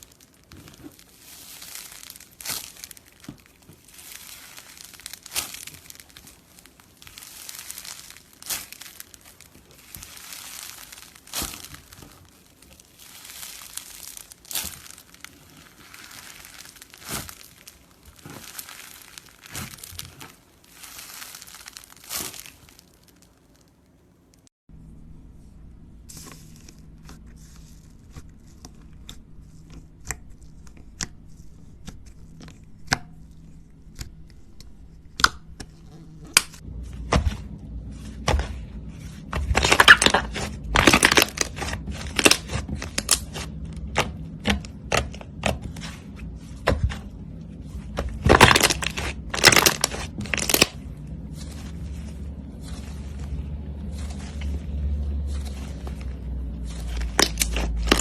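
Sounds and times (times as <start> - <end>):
slime popping and crackling: 0.0 - 24.5, 38.2 - 47.1, 47.8 - 58.0.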